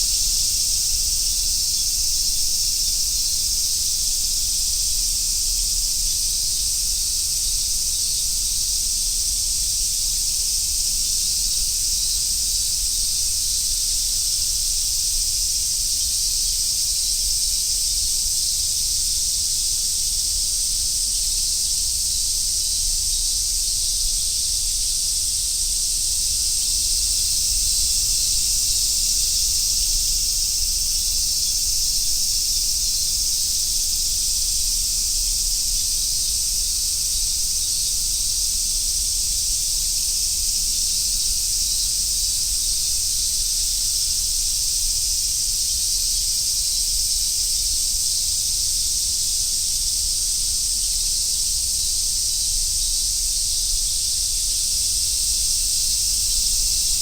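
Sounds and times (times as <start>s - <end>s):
cicadas buzzing: 0.0s - 57.0s.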